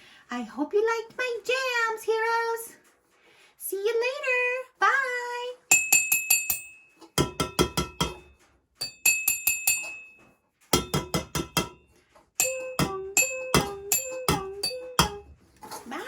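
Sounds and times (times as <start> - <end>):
spoon tapping mugs: 5.7 - 15.4
child humming: 12.6 - 15.3.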